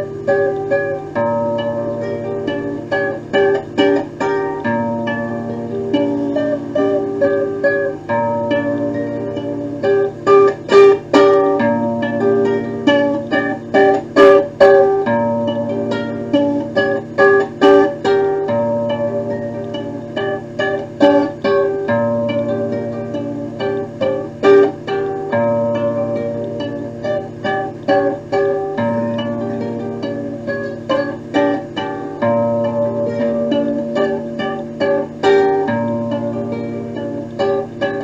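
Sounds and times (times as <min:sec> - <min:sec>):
instrumental music: 0:00.0 - 0:38.0.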